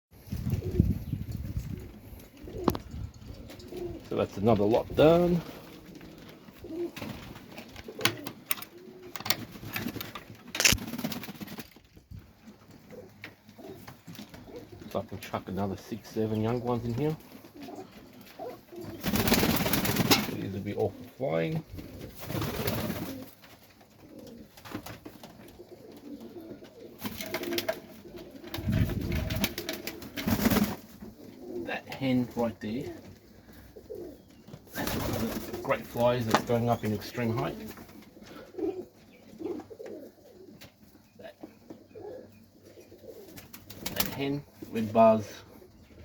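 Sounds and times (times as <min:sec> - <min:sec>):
pigeons cooing: 0:00.2 - 0:46.0
clicks and rustling: 0:07.5 - 0:14.4.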